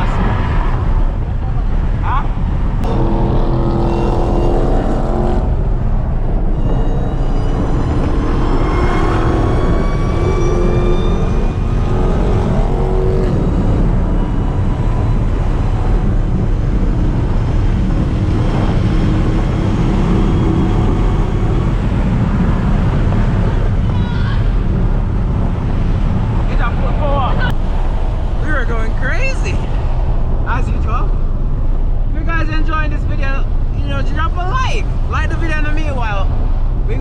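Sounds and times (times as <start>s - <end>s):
car engine low rumble: 0.0s - 37.0s
road noise: 0.0s - 37.0s
supercharger whine: 2.6s - 29.5s.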